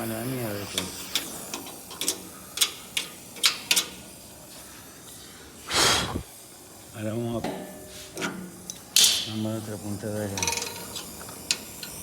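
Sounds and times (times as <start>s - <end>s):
welding torch whoosh: 5.6s - 6.4s.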